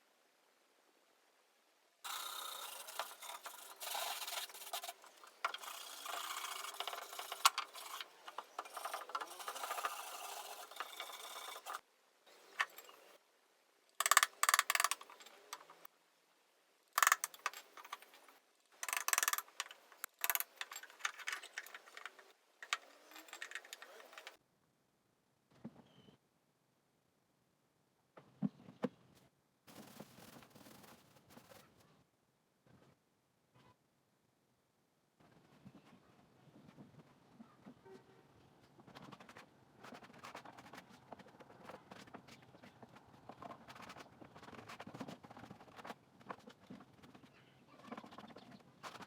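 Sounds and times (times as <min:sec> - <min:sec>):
hand tools rasping on wood: 0:02.1 - 0:11.8.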